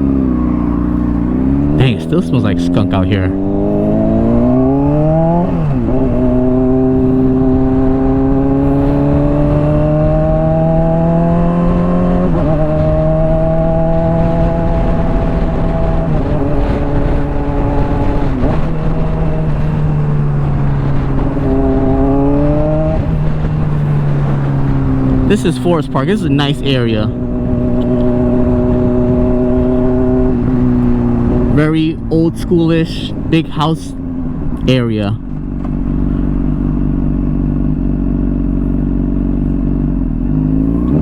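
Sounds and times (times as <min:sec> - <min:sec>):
motorcycle engine cruising: 0:00.0 - 0:41.0.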